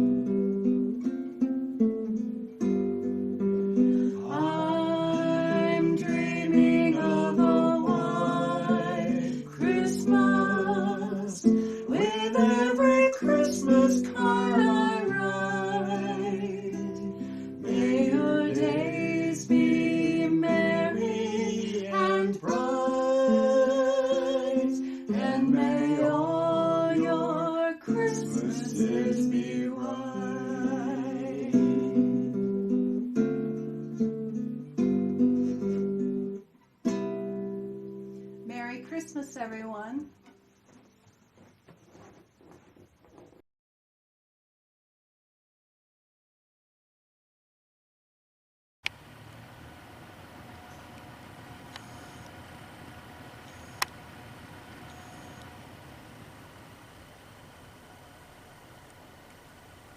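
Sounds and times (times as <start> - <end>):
acoustic guitar strumming: 0.0 - 41.0
person singing with vibrato: 4.1 - 32.3.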